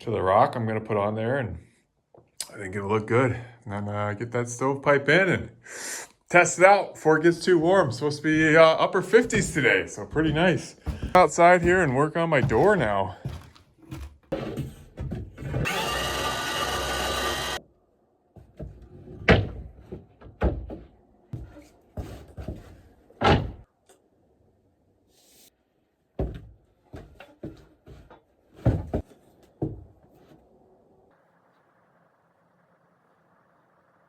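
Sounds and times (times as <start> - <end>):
mechanical whir: 15.6 - 17.6.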